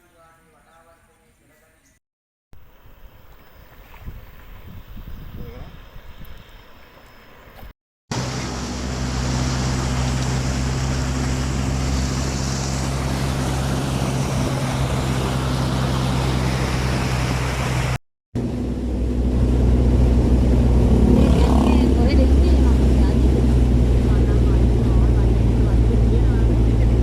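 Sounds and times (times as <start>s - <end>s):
motor engine humming: 7.6s - 27.0s.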